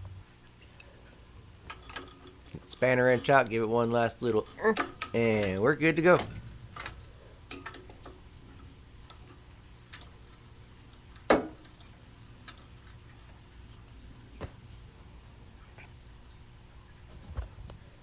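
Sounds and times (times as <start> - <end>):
faint low hum: 0.0 - 18.0
metal tools clicking: 4.2 - 10.4.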